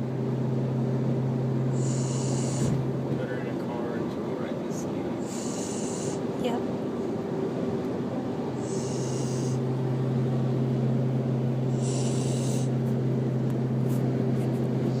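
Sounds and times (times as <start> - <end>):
steady low hum: 0.0 - 15.0
puppy snoring: 1.8 - 2.8, 5.2 - 6.5, 8.6 - 9.6, 11.7 - 12.8.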